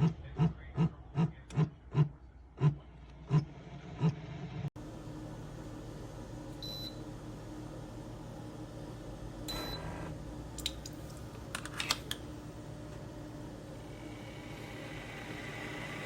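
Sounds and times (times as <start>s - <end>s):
coffee maker humming: 4.8s - 16.0s.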